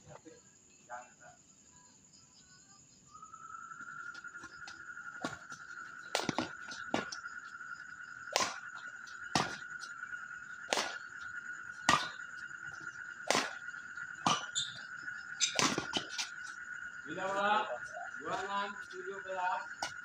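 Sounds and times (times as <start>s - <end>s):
high-pitched whine: 2.9s - 20.0s
ball being hit: 6.1s - 7.2s, 8.3s - 8.7s, 9.3s - 9.7s, 10.7s - 11.0s, 11.8s - 12.2s, 13.2s - 14.7s, 15.4s - 16.2s.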